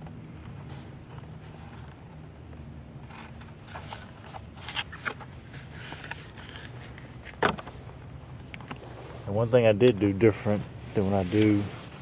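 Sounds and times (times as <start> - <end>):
steady low hum: 0.0 - 12.0
clicks and scrapes of objects: 3.0 - 9.3.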